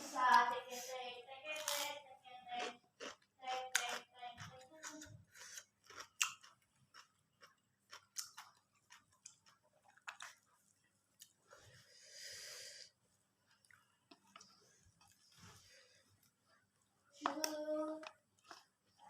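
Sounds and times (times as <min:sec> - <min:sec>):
chewing and crunching food: 0:01.6 - 0:11.8, 0:13.2 - 0:19.0
breathy hiss: 0:11.8 - 0:13.0.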